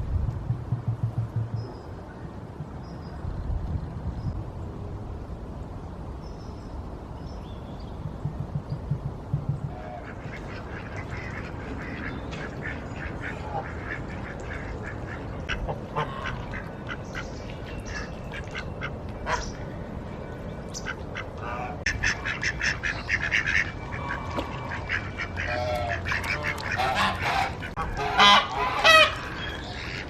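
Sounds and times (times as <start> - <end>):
ducks quacking: 9.6 - 19.6, 20.8 - 30.0.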